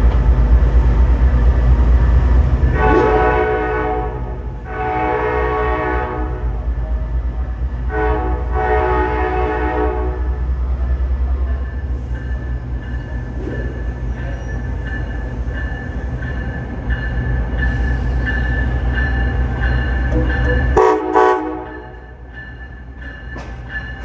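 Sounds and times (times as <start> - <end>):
diesel locomotive horn blasts: 2.6 - 6.8, 7.8 - 10.6, 20.1 - 22.2.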